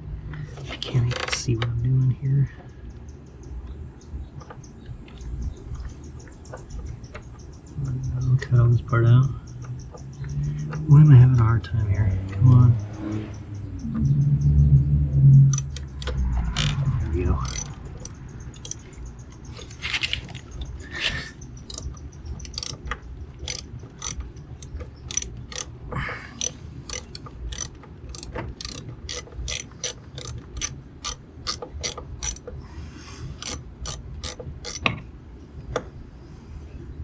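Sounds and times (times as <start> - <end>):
ratchet wrench clicking: 15.4 - 32.5, 33.4 - 34.9.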